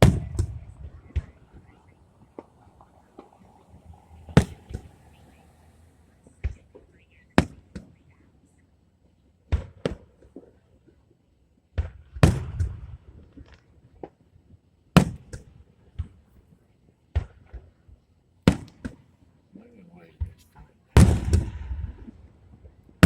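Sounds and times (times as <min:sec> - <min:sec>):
fireworks booming: 0:00.0 - 0:05.4, 0:11.8 - 0:13.5, 0:21.0 - 0:23.0.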